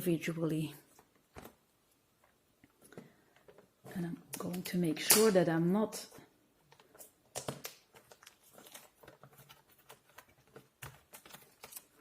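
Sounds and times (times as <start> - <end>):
packaging rustling and crinkling: 6.8 - 12.0.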